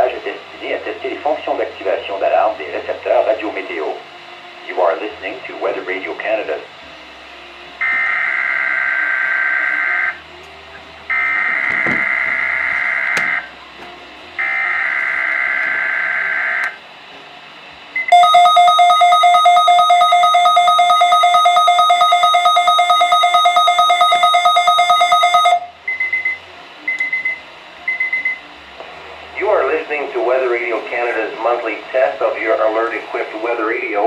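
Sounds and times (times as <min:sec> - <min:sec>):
pulsing electronic alert tone: 0:18.1 - 0:26.4.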